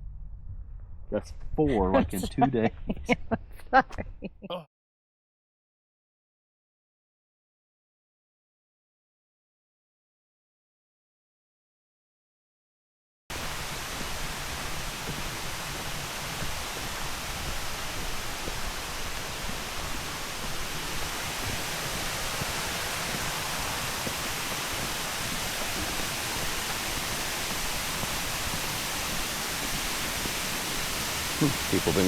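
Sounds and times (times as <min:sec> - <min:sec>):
waterfall roaring: 0:13.3 - 0:32.0.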